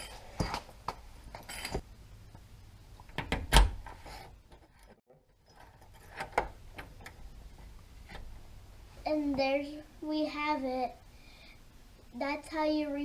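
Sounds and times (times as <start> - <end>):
deadbolt clicking and clunking: 3.1 - 3.8.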